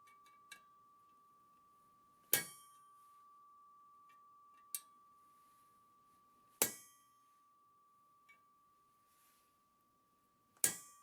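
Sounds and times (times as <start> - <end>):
hammer striking metal punch: 2.3 - 2.8, 6.6 - 7.0, 10.6 - 11.0.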